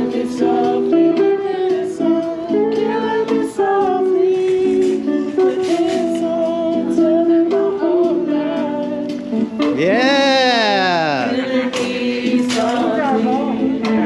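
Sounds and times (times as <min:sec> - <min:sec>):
acoustic guitar chords: 0:09.6 - 0:11.6
person singing: 0:09.6 - 0:11.6.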